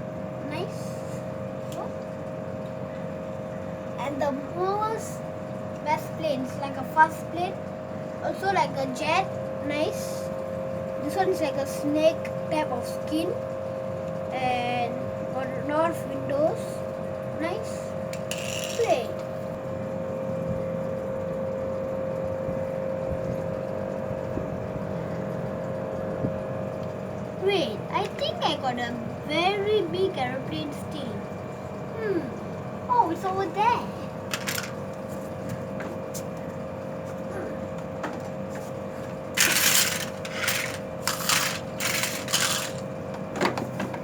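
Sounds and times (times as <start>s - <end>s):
machine hum: 16.7s - 43.3s
objects clattering and scraping: 34.3s - 34.8s, 38.5s - 44.0s.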